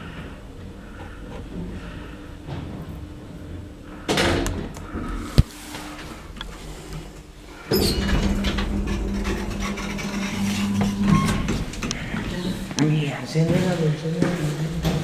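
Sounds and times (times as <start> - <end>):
steady low hum: 0.0 - 15.0
lift sliding doors moving: 4.9 - 15.0.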